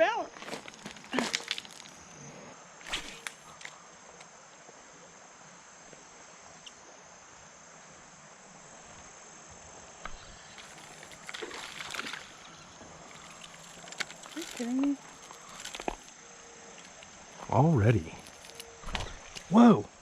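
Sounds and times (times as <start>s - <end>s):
insects chirring: 0.0s - 20.0s
crunching and scuffing: 0.3s - 2.1s, 10.1s - 16.2s, 18.2s - 19.5s.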